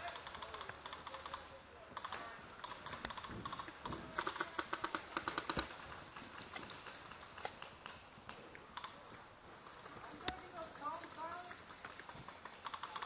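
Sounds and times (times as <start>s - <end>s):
airsoft rifle firing clicking shots: 0.0s - 9.0s.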